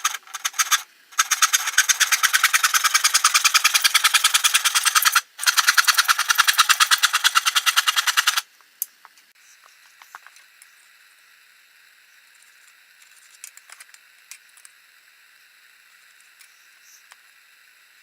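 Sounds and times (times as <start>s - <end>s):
saw cutting wood: 0.0s - 8.5s.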